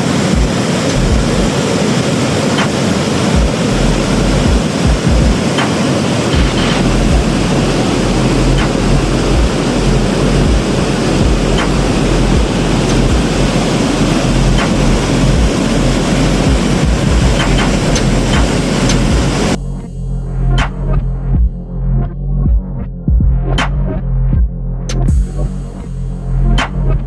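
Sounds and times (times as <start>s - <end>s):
waterfall roaring: 0.0s - 19.6s.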